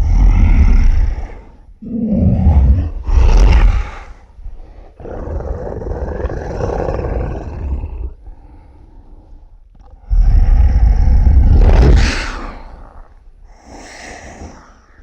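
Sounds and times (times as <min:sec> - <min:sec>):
monster roar: 0:00.0 - 0:04.2, 0:05.0 - 0:08.2, 0:10.1 - 0:12.8.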